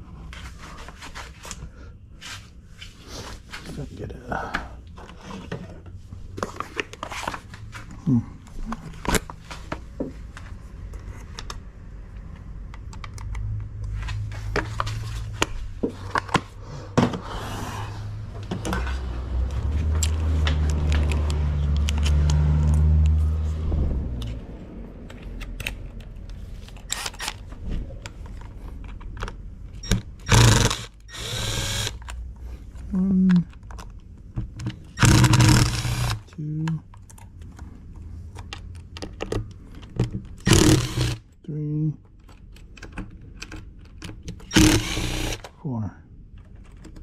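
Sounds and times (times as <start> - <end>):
tools clicking and scraping on parts: 18.4 - 23.2, 25.0 - 41.4, 42.0 - 45.6.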